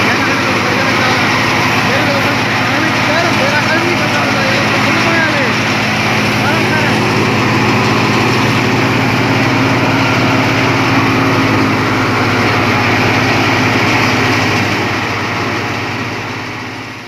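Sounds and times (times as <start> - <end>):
engine hum: 0.0 - 17.0
thresher rushing noise: 0.0 - 17.0.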